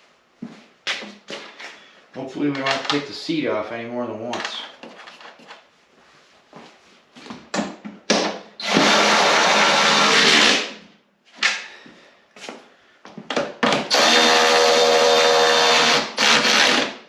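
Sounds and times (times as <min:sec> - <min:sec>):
power tool motor running: 0:08.6 - 0:10.7, 0:13.9 - 0:17.0.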